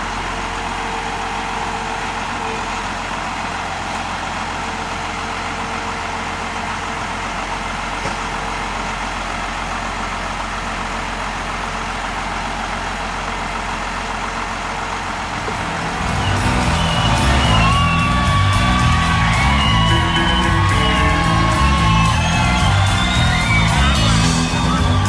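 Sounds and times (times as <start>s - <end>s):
engine-like drone: 0.0s - 25.0s
music: 15.6s - 25.0s.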